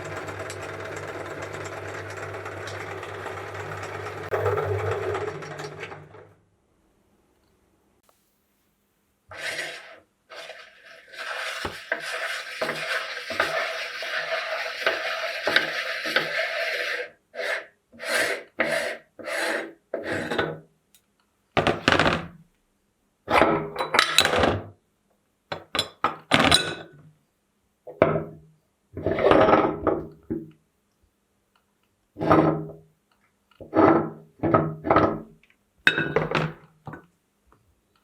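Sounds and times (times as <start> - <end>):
meat grinder grinding: 0.0 - 6.4, 9.4 - 17.1.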